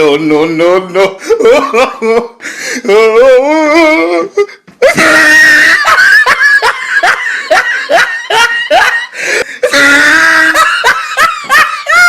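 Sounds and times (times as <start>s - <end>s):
high-pitched laugh: 4.8s - 12.0s.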